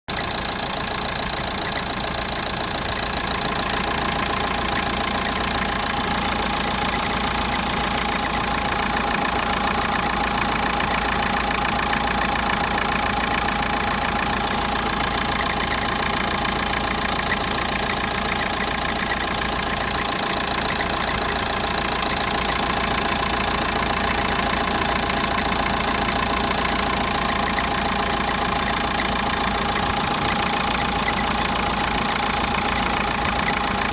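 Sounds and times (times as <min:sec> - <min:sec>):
diesel engine running: 0:00.1 - 0:33.9.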